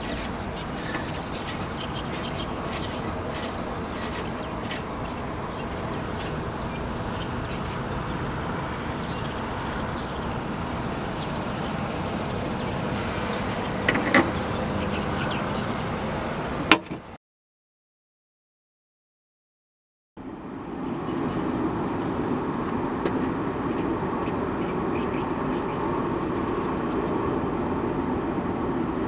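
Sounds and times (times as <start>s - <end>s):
car running: 0.0s - 16.8s.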